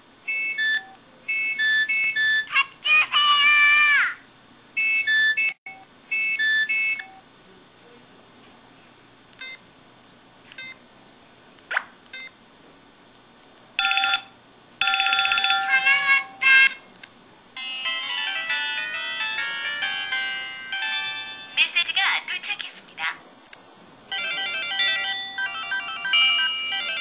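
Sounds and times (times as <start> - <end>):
polyphonic ringtone tune: 13.8 - 16.8, 17.6 - 21.6, 24.1 - 27.0.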